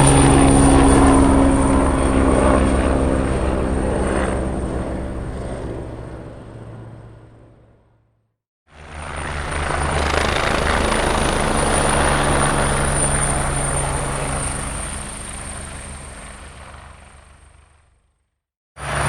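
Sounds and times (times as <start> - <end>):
helicopter rotor beat: 0.0 - 7.8, 8.7 - 18.1, 18.8 - 19.0
helicopter high whine: 0.0 - 7.9, 8.7 - 18.1, 18.8 - 19.0.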